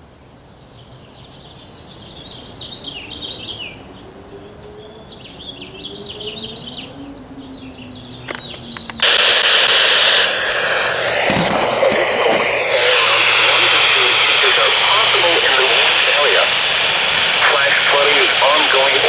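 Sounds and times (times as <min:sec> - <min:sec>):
birds chirping and singing: 0:00.4 - 0:09.0
clicks: 0:08.3 - 0:12.6
loud steady hiss: 0:09.0 - 0:19.0.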